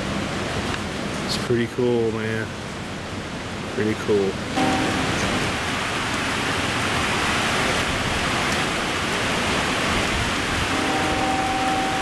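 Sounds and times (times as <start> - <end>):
heavy rain hissing: 4.6 - 12.0.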